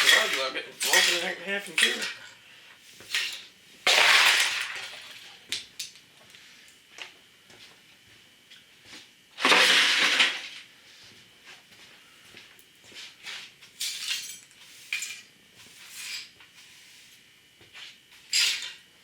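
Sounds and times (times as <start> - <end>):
debris clattering and scraping: 0.0 - 2.3, 3.1 - 5.3, 9.4 - 10.6.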